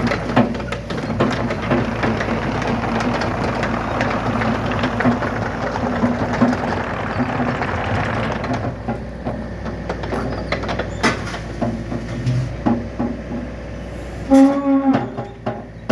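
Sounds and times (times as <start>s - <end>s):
diesel engine running: 0.0s - 12.4s
knocks and clanks: 0.0s - 13.4s.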